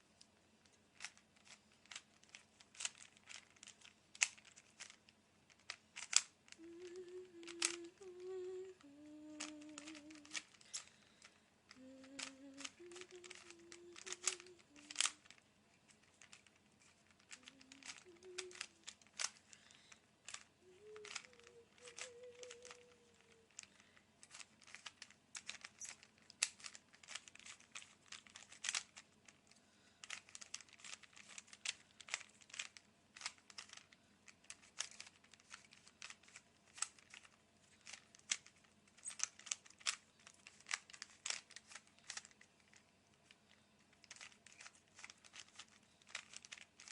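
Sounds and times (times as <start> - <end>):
puzzle cube layers clicking: 0.9 - 8.0, 9.3 - 11.0, 12.1 - 19.6, 20.2 - 46.9.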